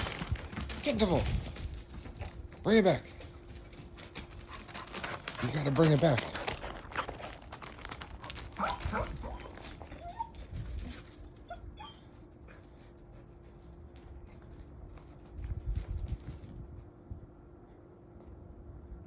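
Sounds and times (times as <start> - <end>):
dog whimpering: 8.6 - 10.5, 11.4 - 12.1.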